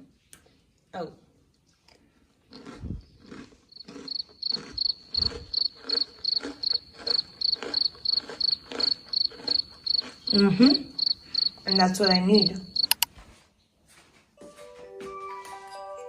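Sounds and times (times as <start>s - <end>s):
cricket chirping: 3.7s - 13.1s.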